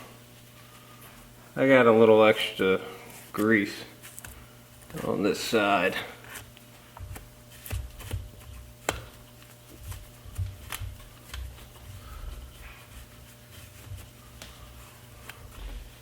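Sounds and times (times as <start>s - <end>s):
rag rubbing and wiping: 3.1s - 16.0s.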